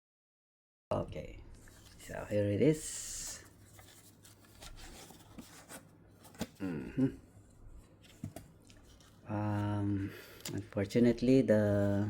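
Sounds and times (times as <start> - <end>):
person humming: 6.6 - 7.2
person voicing uh: 6.6 - 7.2.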